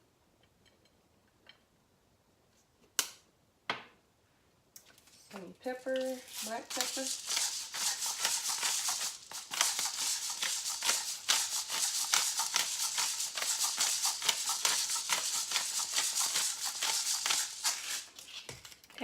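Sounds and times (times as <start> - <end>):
pepper rattling from container: 6.0 - 18.9.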